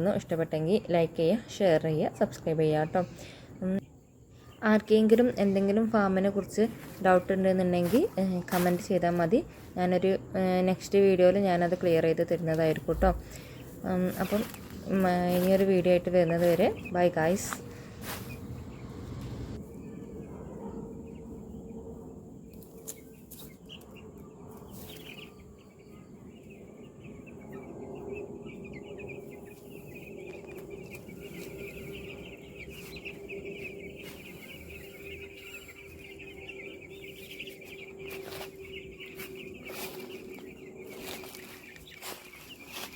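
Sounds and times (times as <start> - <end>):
chicks peeping: 0.0 - 42.9
steady low hum: 0.0 - 42.9.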